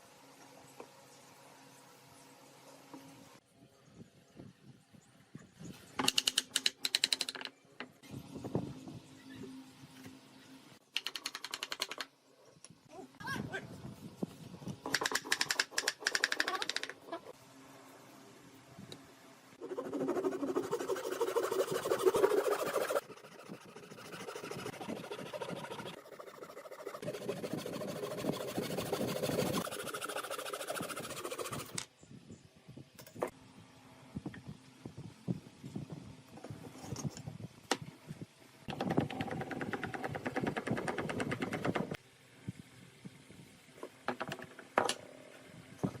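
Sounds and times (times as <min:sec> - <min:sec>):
sharp clicks and taps: 0:14.9 - 0:17.0
tool working wood: 0:19.6 - 0:31.8.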